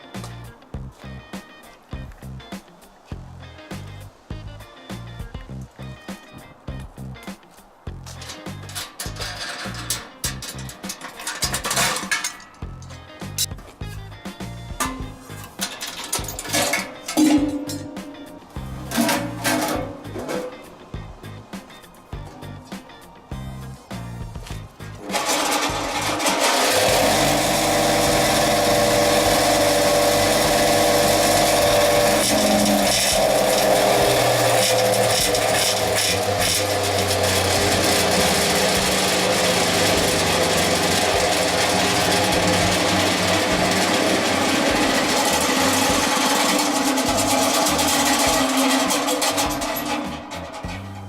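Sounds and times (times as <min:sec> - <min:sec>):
vibrating sieve humming: 0:14.7 - 0:21.2, 0:23.3 - 0:51.0.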